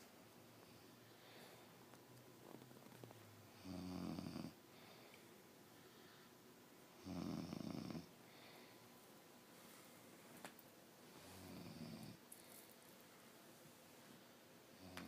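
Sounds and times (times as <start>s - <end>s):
soft breathing: 0.5s - 2.6s, 4.7s - 6.5s, 8.1s - 10.4s, 11.0s - 15.0s
man snoring: 3.5s - 4.6s, 7.0s - 8.1s, 11.4s - 12.2s.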